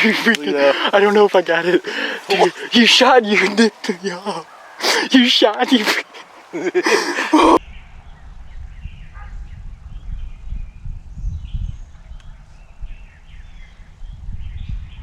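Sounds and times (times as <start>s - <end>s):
man's excited voice: 0.0s - 7.6s
faint birds chirping: 0.0s - 15.0s.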